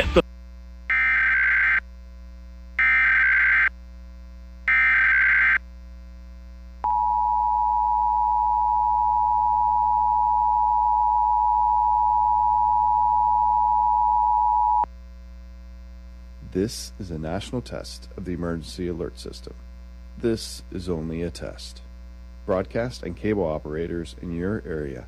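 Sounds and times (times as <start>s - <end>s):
two-tone attention signal: 6.9s - 14.8s.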